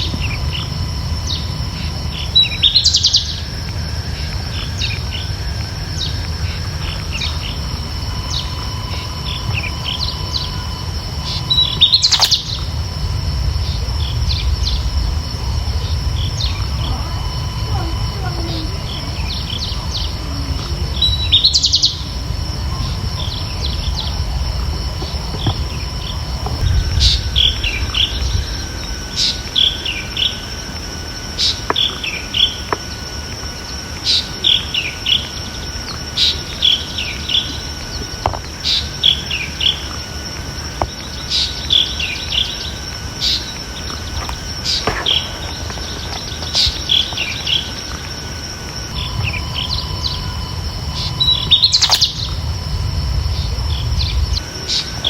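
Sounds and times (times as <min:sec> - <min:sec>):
bird chirping: 0:00.0 - 0:30.6, 0:31.4 - 0:48.2, 0:48.8 - 0:55.0
low rumble: 0:00.0 - 0:31.2, 0:42.2 - 0:54.7
high-pitched drone: 0:00.0 - 0:55.0.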